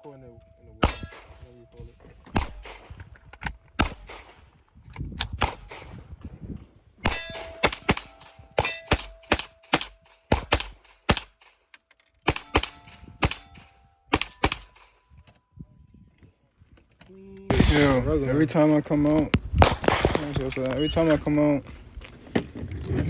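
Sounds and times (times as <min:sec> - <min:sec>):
pistol shots: 0:00.8 - 0:01.6, 0:02.3 - 0:03.2, 0:03.8 - 0:04.4, 0:05.3 - 0:06.0, 0:07.0 - 0:11.6, 0:12.2 - 0:15.0, 0:17.5 - 0:21.1
metallic clang and ringing: 0:00.8 - 0:02.2, 0:07.1 - 0:11.0, 0:12.3 - 0:15.3.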